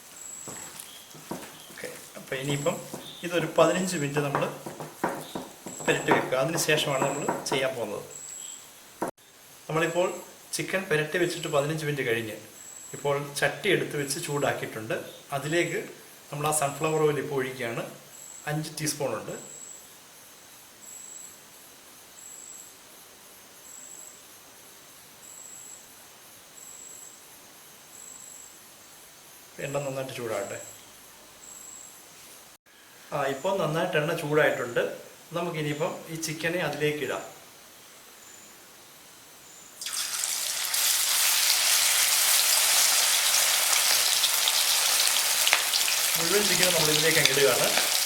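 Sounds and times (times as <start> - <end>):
chicken sizzling in hot oil: 0.0 - 7.5, 39.8 - 48.0
faint steady hiss: 0.0 - 48.0
cricket chirping: 30.5 - 32.0.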